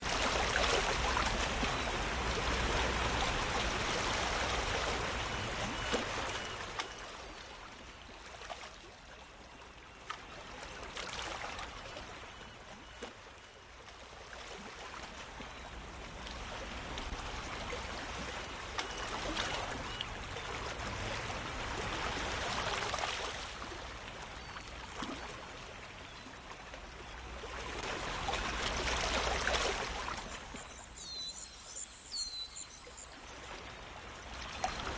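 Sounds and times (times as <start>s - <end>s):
flowing stream rushing: 0.0s - 6.4s.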